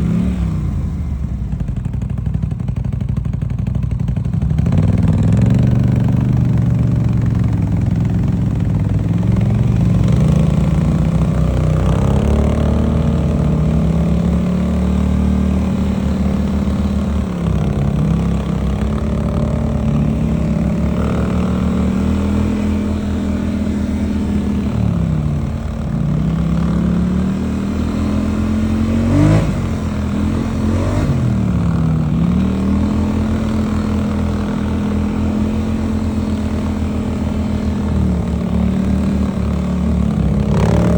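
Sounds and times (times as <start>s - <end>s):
atv engine revving: 0.0s - 40.9s.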